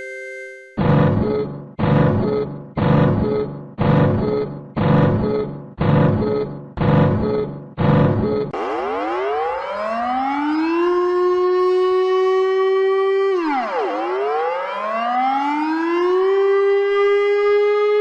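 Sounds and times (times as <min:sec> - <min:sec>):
emergency siren wailing: 0:08.6 - 0:18.0.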